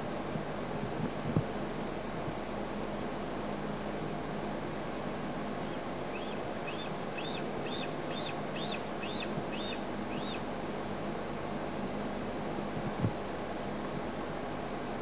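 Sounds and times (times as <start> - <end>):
bird whistling begging call: 5.6 - 10.4.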